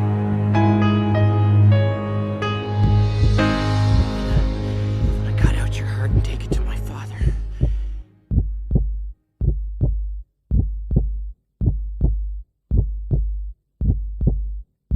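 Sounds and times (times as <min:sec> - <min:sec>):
held musical note: 0:00.0 - 0:08.3
heartbeat thumps: 0:02.8 - 0:14.6.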